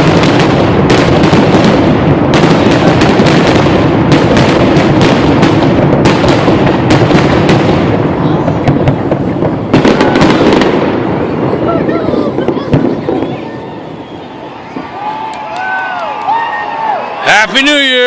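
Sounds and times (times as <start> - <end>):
fireworks shells bursting: 0.0 - 15.6
sharp firework cracks: 0.0 - 17.0.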